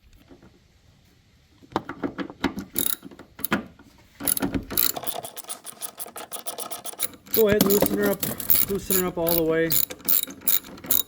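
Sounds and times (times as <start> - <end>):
hand ratchet clicking: 2.8 - 3.6, 4.3 - 11.0.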